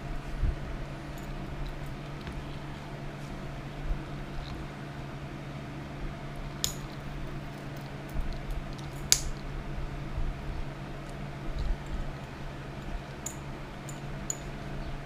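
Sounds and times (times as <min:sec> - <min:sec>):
steady low hum: 0:00.0 - 0:15.0
light metallic clinks: 0:06.6 - 0:09.4, 0:11.0 - 0:15.0.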